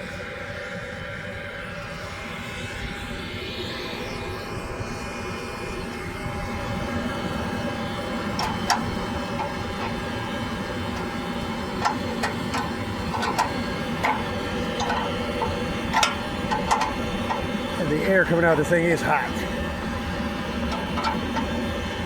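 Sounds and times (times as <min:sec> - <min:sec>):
furnace blower rush and hum: 0:00.0 - 0:22.0
sharp ticks and pops: 0:11.8 - 0:17.6.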